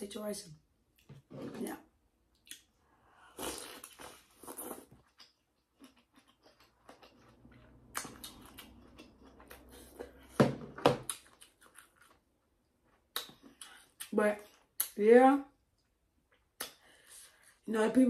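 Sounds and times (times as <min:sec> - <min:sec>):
wet chewing and smacking: 0:03.4 - 0:10.3, 0:11.0 - 0:15.0.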